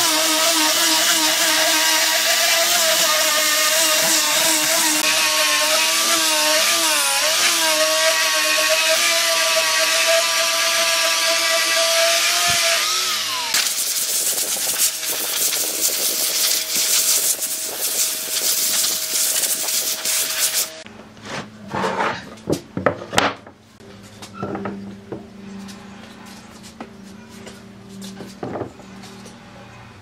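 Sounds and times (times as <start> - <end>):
power tool whining on wood: 0.0 - 20.8.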